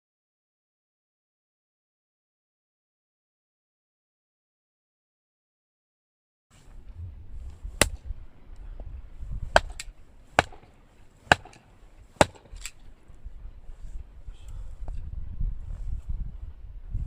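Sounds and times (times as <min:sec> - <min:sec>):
low rumble: 0:06.6 - 0:09.6
sharp chopping strikes: 0:07.8 - 0:08.0, 0:09.5 - 0:12.8.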